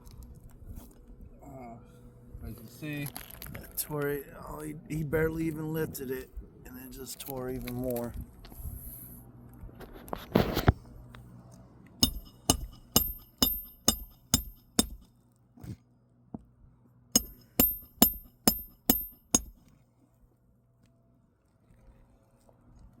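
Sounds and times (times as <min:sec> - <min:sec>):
hammer striking metal: 0:12.0 - 0:15.1, 0:17.2 - 0:19.6.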